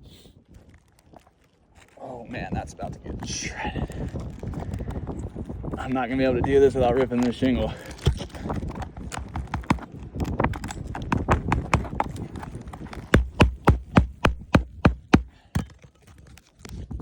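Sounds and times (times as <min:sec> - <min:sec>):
shingle clicking and scraping: 0:06.8 - 0:17.0
hammer striking nails: 0:09.1 - 0:09.9, 0:10.5 - 0:15.8.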